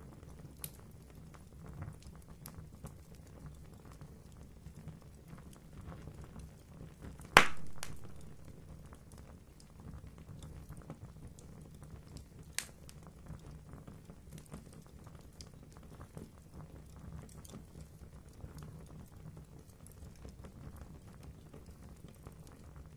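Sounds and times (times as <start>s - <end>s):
fire crackling in a fireplace: 0.0s - 22.9s
loud fire pop: 7.4s - 8.7s.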